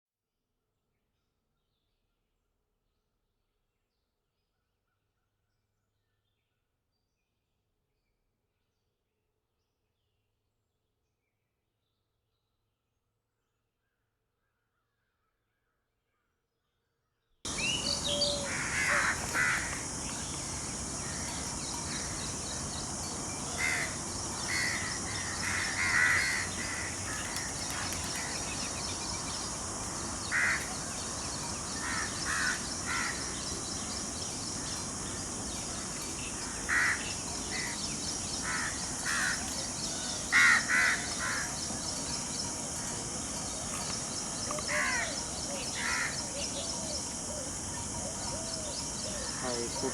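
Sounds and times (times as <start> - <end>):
birds calling: 17.5 - 49.9
steady high-pitched hiss: 17.5 - 49.9.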